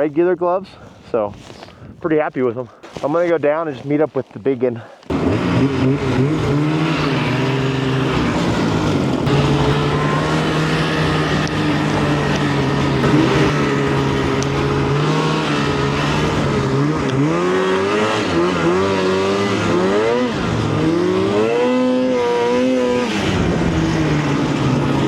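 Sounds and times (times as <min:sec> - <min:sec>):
snowmobile engine running: 0:05.1 - 0:25.0.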